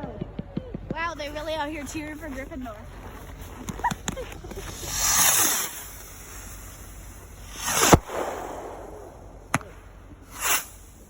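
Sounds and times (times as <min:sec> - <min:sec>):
fireworks crackling: 0:01.1 - 0:11.0
firework whoosh and bang: 0:04.7 - 0:11.0.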